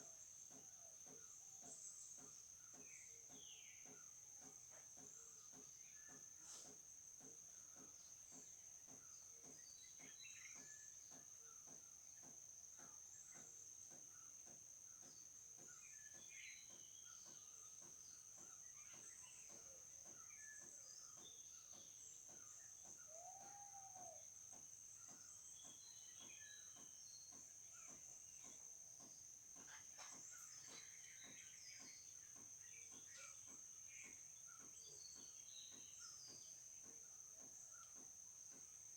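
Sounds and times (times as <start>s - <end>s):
crickets droning: 0.0s - 38.9s
bird chirps: 15.0s - 38.8s.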